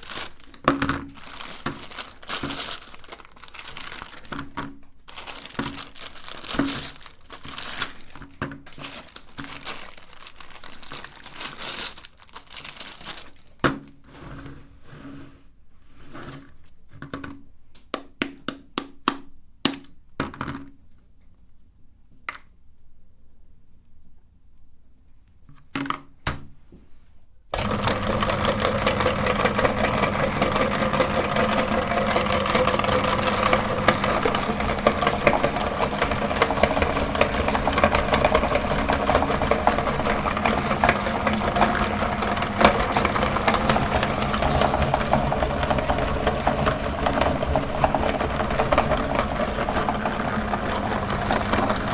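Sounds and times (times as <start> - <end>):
electric meat grinder motor: 27.6 - 51.9.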